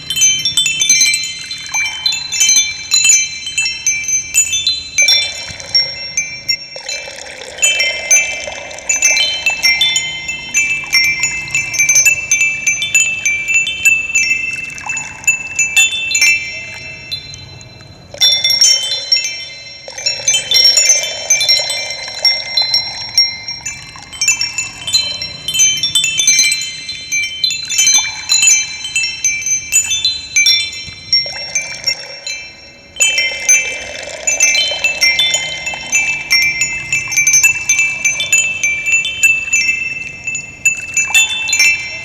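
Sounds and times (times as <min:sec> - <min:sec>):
wind chimes ringing: 0:00.0 - 0:42.0.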